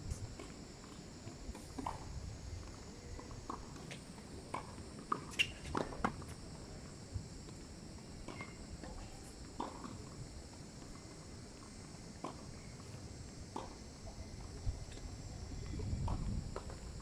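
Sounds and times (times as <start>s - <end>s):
wind on microphone: 14.5s - 17.0s.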